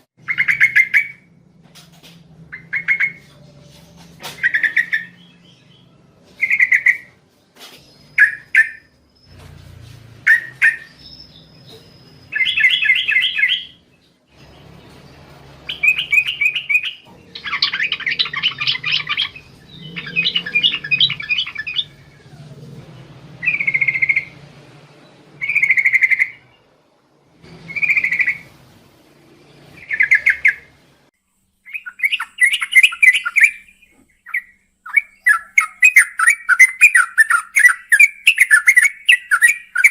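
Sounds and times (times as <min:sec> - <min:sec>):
bulbul singing: 0:02.4 - 0:07.2, 0:10.2 - 0:22.4, 0:23.1 - 0:24.4, 0:25.3 - 0:26.7, 0:27.5 - 0:28.6, 0:29.7 - 0:30.8, 0:31.6 - 0:39.9.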